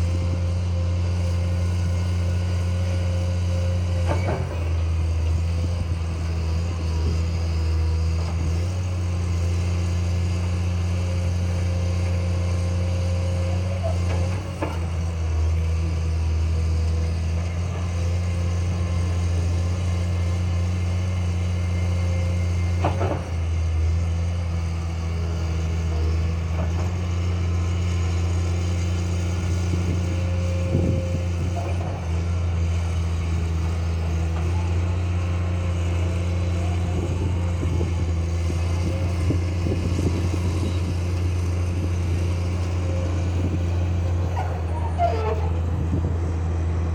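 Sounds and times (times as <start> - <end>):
excavator diesel engine running: 0.0 - 46.9.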